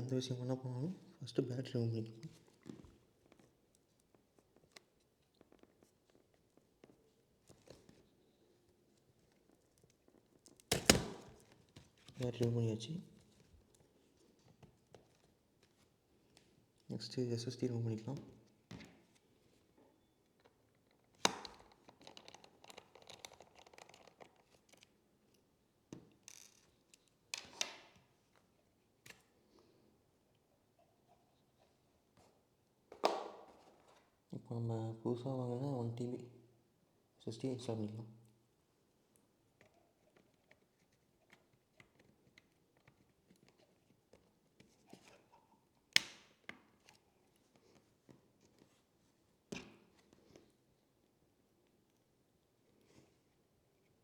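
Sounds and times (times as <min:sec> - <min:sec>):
small parts clicking and scraping: 0:21.6 - 0:24.9.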